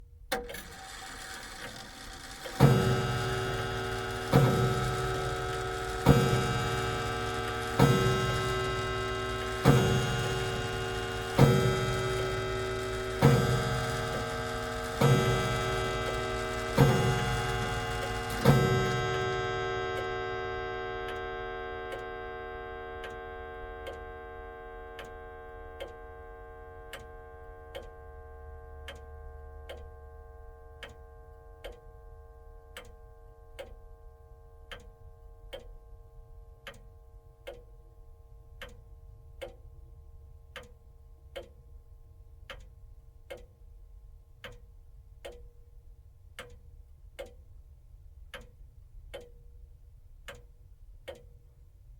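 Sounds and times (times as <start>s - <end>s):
wall clock ticking: 0.3s - 20.1s, 39.4s - 39.6s, 43.3s - 43.5s, 48.3s - 49.4s, 51.1s - 51.4s
clock chime ringing: 0.6s - 22.3s.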